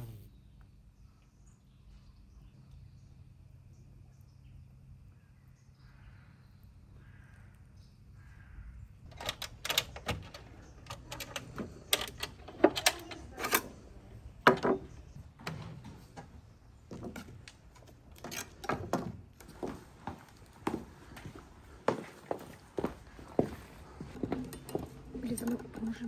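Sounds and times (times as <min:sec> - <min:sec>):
sharp clicks and knocks: 0:09.1 - 0:13.8, 0:14.4 - 0:16.3.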